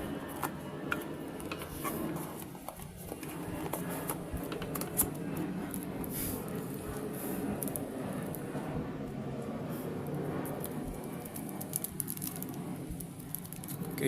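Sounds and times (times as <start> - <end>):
hands handling box and packaging: 0.3 - 6.2.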